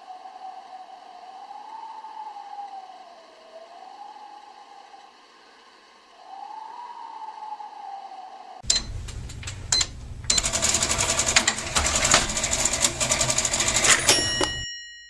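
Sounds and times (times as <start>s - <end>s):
soft whistling wind: 0.0s - 8.7s.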